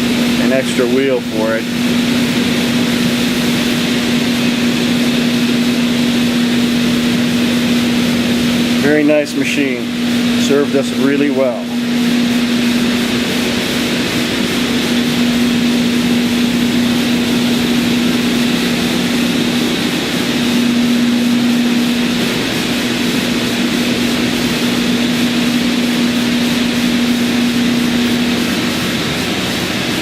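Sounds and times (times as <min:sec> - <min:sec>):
grinder motor hum: 0:00.0 - 0:30.0.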